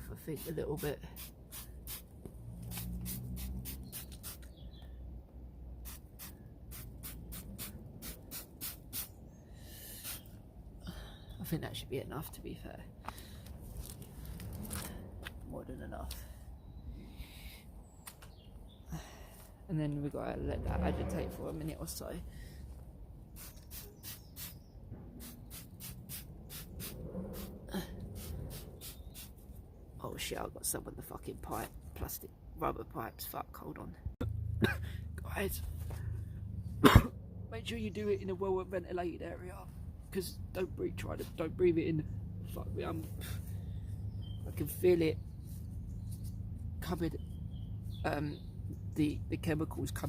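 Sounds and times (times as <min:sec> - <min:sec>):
spray bottle hissing: 0:01.2 - 0:04.6, 0:05.8 - 0:09.2, 0:10.0 - 0:10.3, 0:23.3 - 0:29.4.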